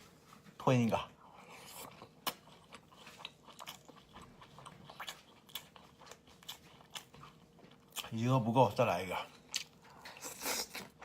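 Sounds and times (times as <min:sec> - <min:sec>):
chewing food: 0:00.3 - 0:11.0.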